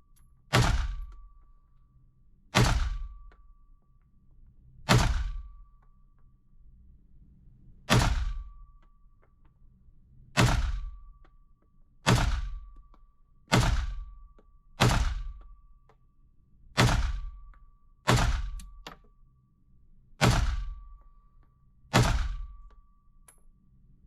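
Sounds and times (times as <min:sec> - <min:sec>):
gunshots: 0:00.5 - 0:01.1, 0:02.6 - 0:03.1, 0:07.9 - 0:08.5, 0:10.4 - 0:11.0, 0:12.1 - 0:12.7, 0:13.5 - 0:14.1, 0:14.8 - 0:15.4, 0:16.8 - 0:17.4, 0:18.1 - 0:18.7, 0:20.2 - 0:20.9, 0:21.9 - 0:22.6.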